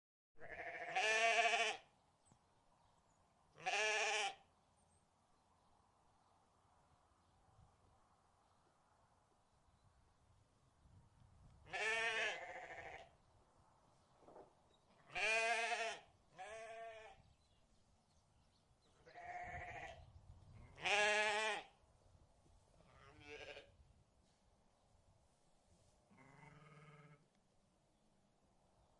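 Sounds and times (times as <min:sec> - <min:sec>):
rams bleating: 0:00.4 - 0:01.8, 0:03.6 - 0:04.4, 0:11.7 - 0:13.1, 0:15.1 - 0:17.2, 0:19.0 - 0:20.0, 0:20.8 - 0:21.7, 0:22.9 - 0:23.7, 0:26.1 - 0:27.2.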